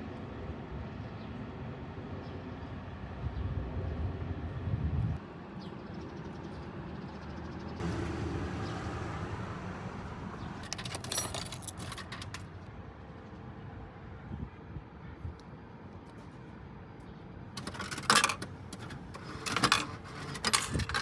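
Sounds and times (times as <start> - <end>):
car passing: 7.8 - 11.5
metallic clicking and rattling: 10.6 - 12.5, 17.6 - 21.0.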